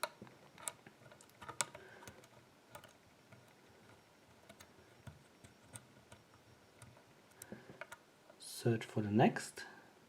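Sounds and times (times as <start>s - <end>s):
lock pick metallic clicks: 0.0s - 8.0s.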